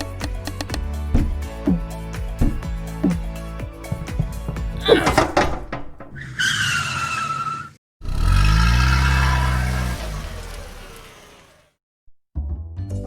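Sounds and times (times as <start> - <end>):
tyre screech: 4.6 - 10.6
car engine revving: 8.0 - 11.8.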